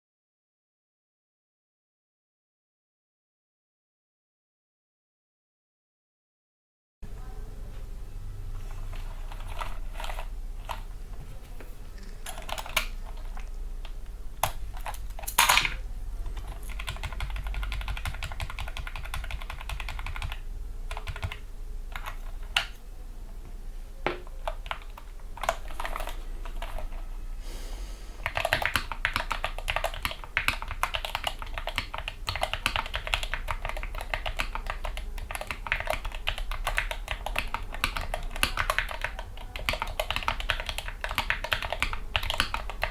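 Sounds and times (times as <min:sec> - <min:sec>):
mechanical keyboard typing: 0:08.7 - 0:11.3, 0:11.9 - 0:22.8, 0:24.2 - 0:27.0, 0:28.2 - 0:42.9.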